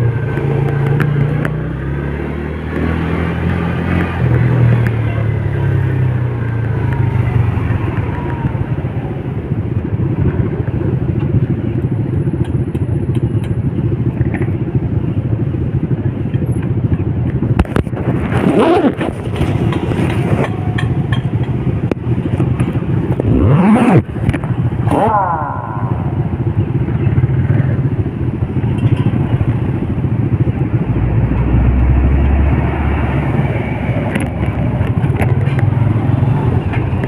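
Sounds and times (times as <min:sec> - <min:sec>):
traffic engines rumbling: 0:00.0 - 0:37.0
engine revving: 0:18.1 - 0:21.1, 0:22.3 - 0:27.6, 0:30.4 - 0:37.0.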